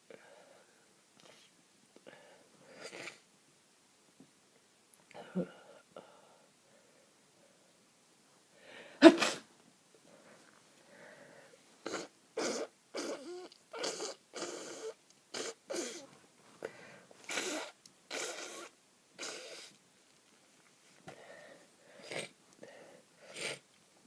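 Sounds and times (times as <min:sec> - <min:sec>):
person sneezing: 0:09.0 - 0:09.5, 0:11.8 - 0:16.1, 0:17.2 - 0:19.7
wet nose blows and sniffs: 0:11.8 - 0:16.1, 0:17.2 - 0:19.8, 0:23.3 - 0:23.6.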